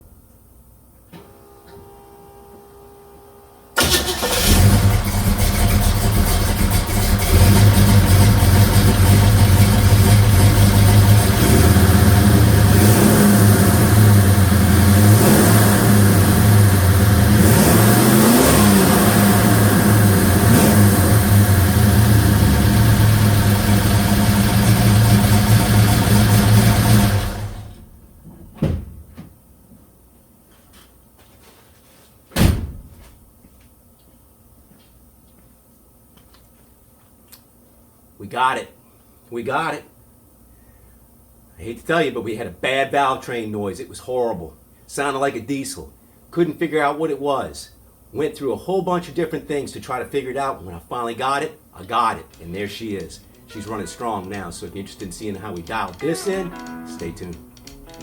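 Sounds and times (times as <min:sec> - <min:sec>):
car engine running: 0:03.8 - 0:27.8
short thump: 0:28.2 - 0:29.3.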